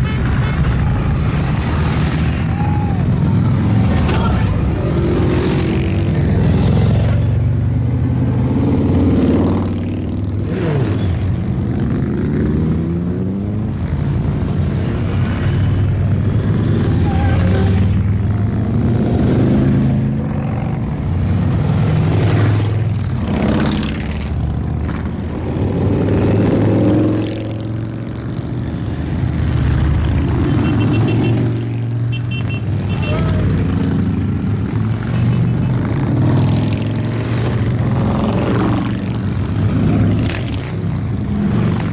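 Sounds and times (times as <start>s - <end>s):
motorcycles riding past: 0.2s - 41.9s.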